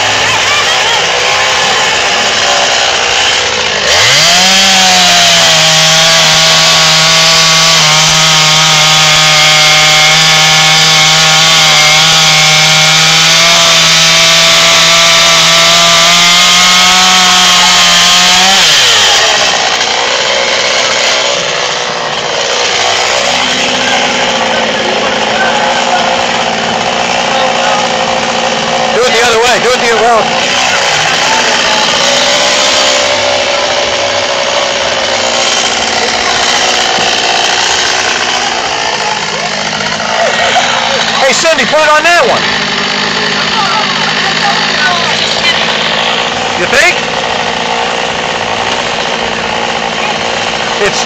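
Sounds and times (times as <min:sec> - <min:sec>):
chainsaw cutting tree trunk: 0:00.0 - 0:51.0.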